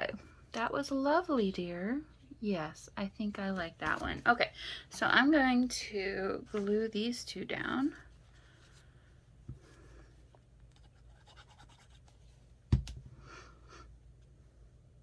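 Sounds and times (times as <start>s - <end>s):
paper rubbing and scratching: 10.8s - 12.2s.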